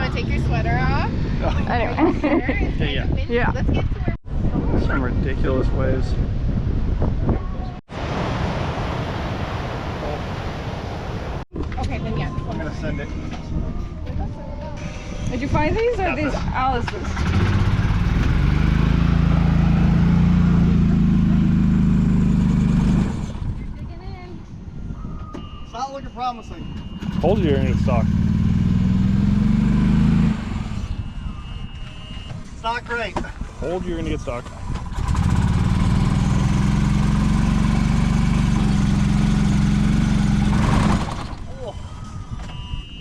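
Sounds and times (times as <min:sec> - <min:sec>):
vehicle engine revving: 0:17.0 - 0:23.7, 0:26.9 - 0:31.2, 0:34.6 - 0:41.5.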